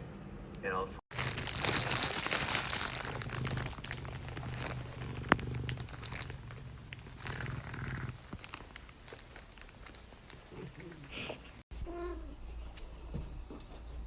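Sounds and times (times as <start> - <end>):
crinkling and rustling: 1.1 - 11.6.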